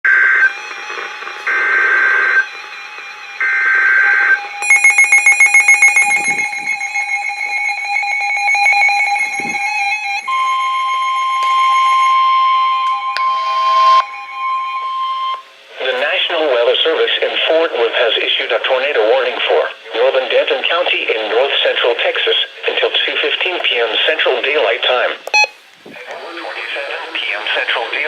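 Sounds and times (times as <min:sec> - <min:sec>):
steady alarm tone: 0:03.4 - 0:15.8
fast beeps: 0:04.6 - 0:12.1, 0:25.3 - 0:25.5
electronic data bursts: 0:04.6 - 0:12.2.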